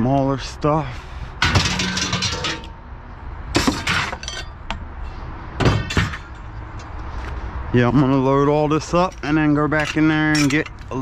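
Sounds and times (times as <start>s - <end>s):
scrap metal clattering: 1.4s - 2.8s, 3.6s - 6.5s.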